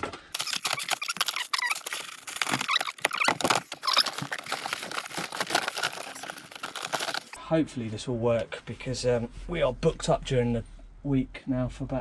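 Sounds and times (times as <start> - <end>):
packaging rustling: 0.3 - 7.4
small plumbing parts rattling: 0.3 - 7.4.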